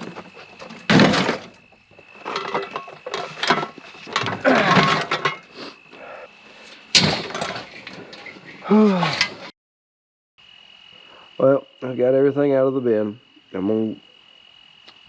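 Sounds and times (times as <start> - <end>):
scrap metal clanking: 0.0 - 5.6, 6.6 - 9.5.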